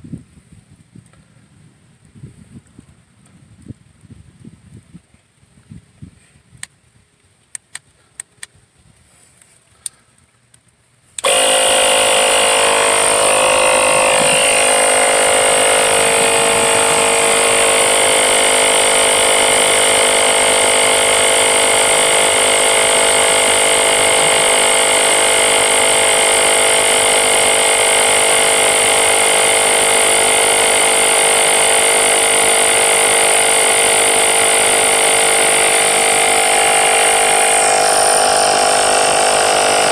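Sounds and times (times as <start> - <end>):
sharp clicks: 11.2 - 39.9
tire inflator compressor whining: 11.2 - 39.9.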